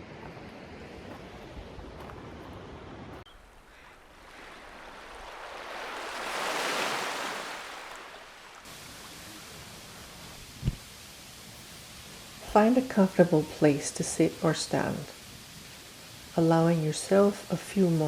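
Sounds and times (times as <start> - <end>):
rushing water: 3.0 - 18.0
low thump: 10.6 - 10.8.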